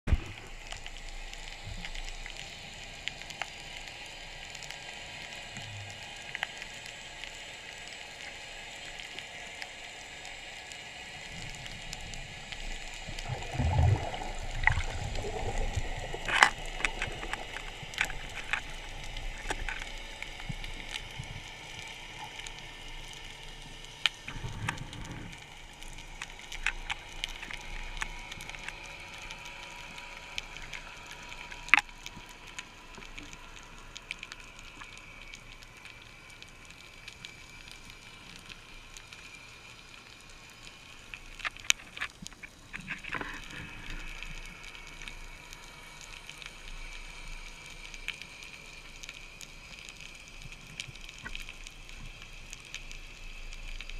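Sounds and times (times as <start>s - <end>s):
water hiss: 0.1s - 53.9s
low rumbling gurgles: 10.6s - 38.1s.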